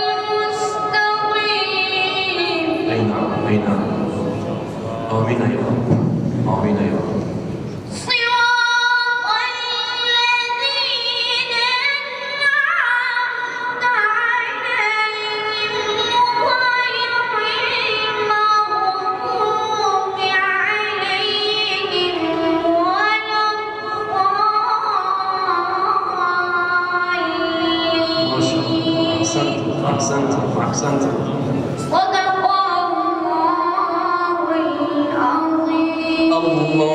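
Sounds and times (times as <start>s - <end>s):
person singing unaccompanied: 24.1s - 30.5s.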